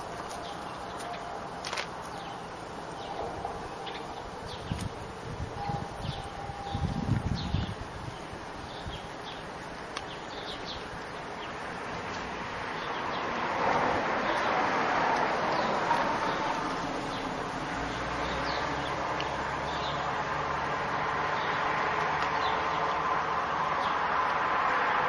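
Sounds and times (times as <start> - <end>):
steady rushing noise: 0.0 - 25.0
bird chirps: 2.0 - 5.0, 5.6 - 13.3.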